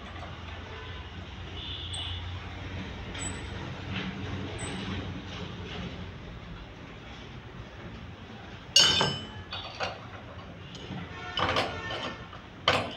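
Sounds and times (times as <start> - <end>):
sharp ringing clink: 8.8 - 9.4
light clinks and knocks: 8.8 - 12.9.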